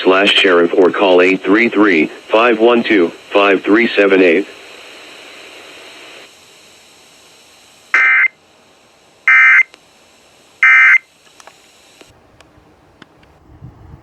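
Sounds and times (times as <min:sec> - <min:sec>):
raspy digital data tone bursts: 0:07.9 - 0:08.4, 0:09.2 - 0:09.7, 0:10.6 - 0:11.1.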